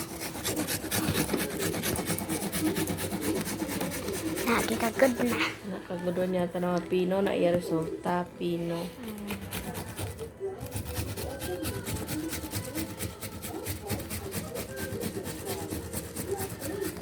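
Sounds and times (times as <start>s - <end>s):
onion grated on a grater: 0.0s - 5.4s, 9.0s - 17.0s.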